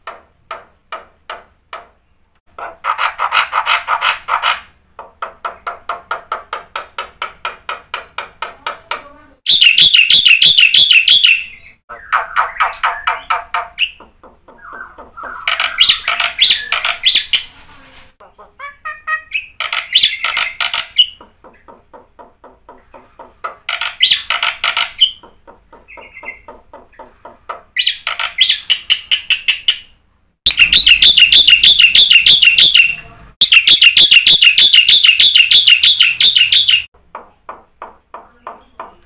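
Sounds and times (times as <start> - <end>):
starling singing: 9.5 - 17.5, 18.2 - 21.7, 22.9 - 29.9, 30.5 - 36.9.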